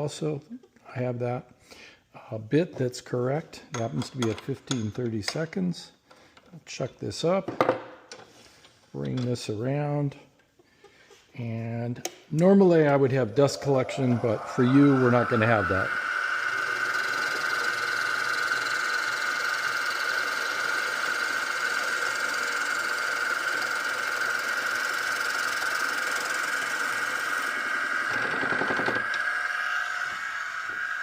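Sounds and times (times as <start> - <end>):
wood lathe whining: 12.6 - 31.0
drill bit boring into wood: 13.3 - 31.0.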